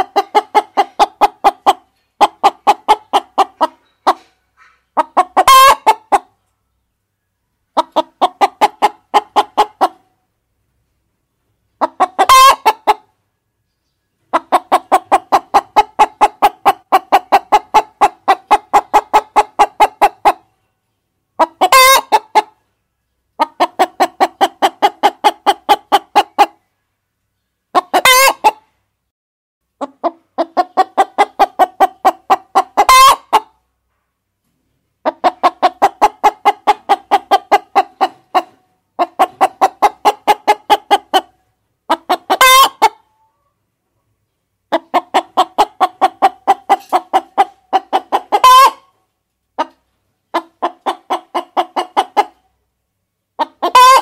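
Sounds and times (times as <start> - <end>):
hens clucking: 0.0 - 6.5, 7.6 - 10.2, 11.7 - 13.2, 14.2 - 20.6, 21.3 - 22.7, 23.3 - 26.7, 27.7 - 28.8, 29.8 - 33.7, 34.4 - 52.7, 53.3 - 54.0.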